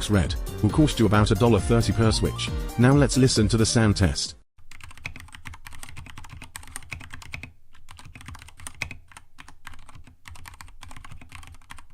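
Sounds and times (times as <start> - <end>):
mechanical keyboard typing: 4.7 - 11.9.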